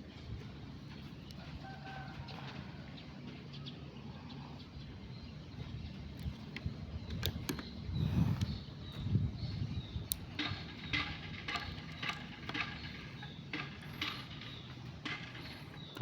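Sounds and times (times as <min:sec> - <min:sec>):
birds chirping: 0:00.0 - 0:16.0
wind rumbling on microphone: 0:04.8 - 0:15.0.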